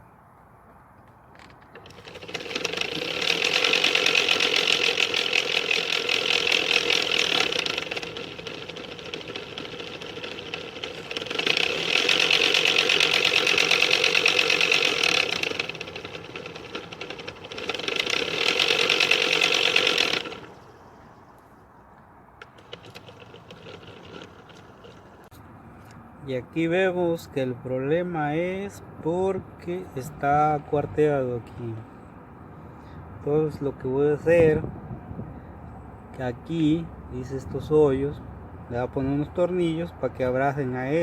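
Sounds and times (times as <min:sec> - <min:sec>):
blower motor rattling: 0:01.6 - 0:21.6, 0:22.4 - 0:25.3.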